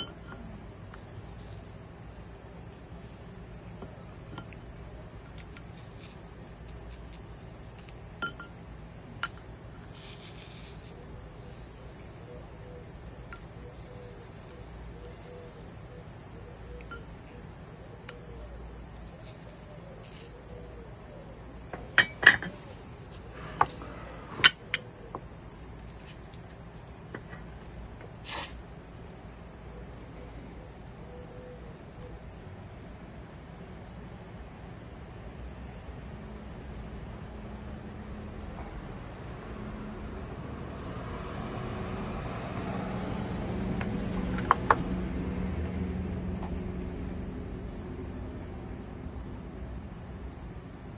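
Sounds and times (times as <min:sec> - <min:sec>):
steady high-pitched hiss: 0:00.0 - 0:50.9
glass and metal clinks: 0:08.2 - 0:08.5, 0:22.0 - 0:22.6.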